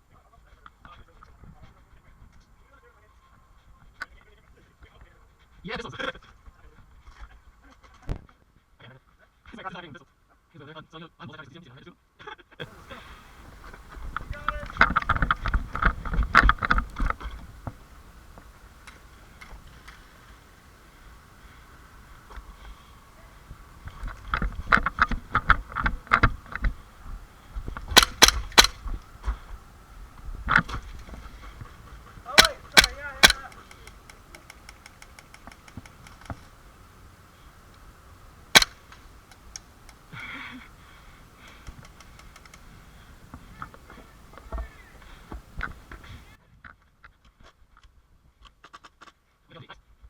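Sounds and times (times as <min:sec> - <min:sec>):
ticks and thumps: 0:27.8 - 0:29.0, 0:32.3 - 0:36.5, 0:38.6 - 0:40.0
airsoft pistol shots: 0:27.9 - 0:29.0, 0:32.3 - 0:33.9, 0:38.6 - 0:39.2.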